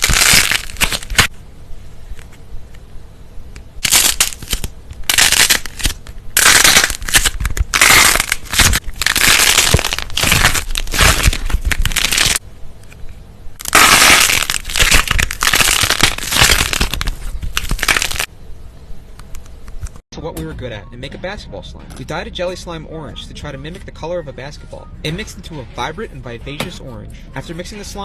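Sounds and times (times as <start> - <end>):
loud crunching and crackling: 0.0 - 1.3, 3.8 - 12.4, 13.6 - 18.3.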